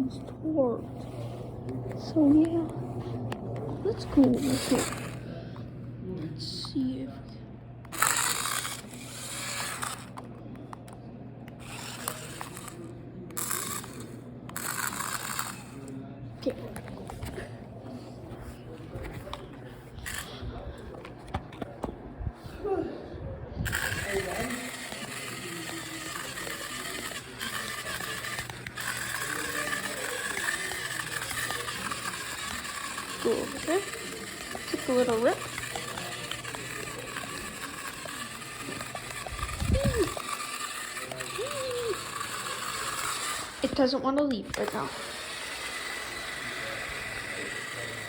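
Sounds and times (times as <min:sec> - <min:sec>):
rc car tyres scraping ground: 0:03.9 - 0:05.2, 0:07.9 - 0:10.2, 0:11.6 - 0:15.8, 0:18.4 - 0:21.7, 0:23.6 - 0:48.0
rattling gear chatter: 0:23.7 - 0:43.8.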